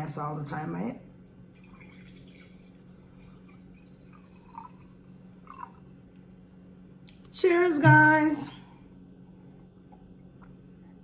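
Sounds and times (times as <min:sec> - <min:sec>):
water dripping into a glass: 0:01.6 - 0:05.9.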